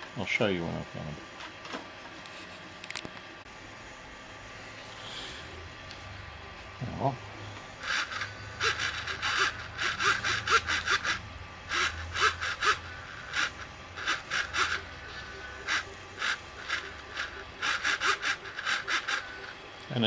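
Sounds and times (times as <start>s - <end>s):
small parts scraping clicks: 7.8s - 19.6s.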